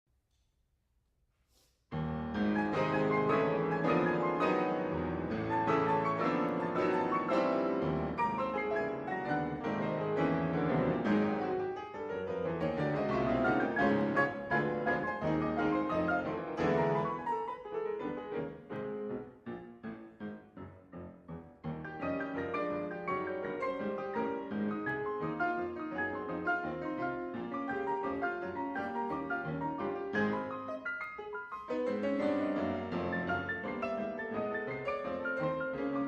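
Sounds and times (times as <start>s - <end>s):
ragtime piano music: 2.0s - 36.0s.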